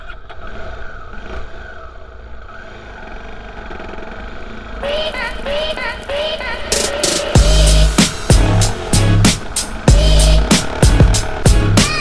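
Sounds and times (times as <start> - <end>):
motorcycle engine running: 0.4 - 12.0
music with repeating melody: 6.7 - 12.0.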